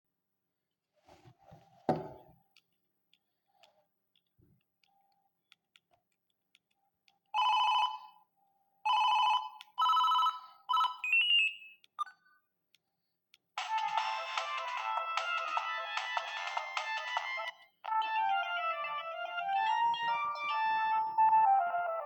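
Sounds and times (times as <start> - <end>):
knock: 1.9 - 2.3
phone ringtone beeping melody: 7.4 - 8.1, 8.9 - 12.1, 17.9 - 22.0.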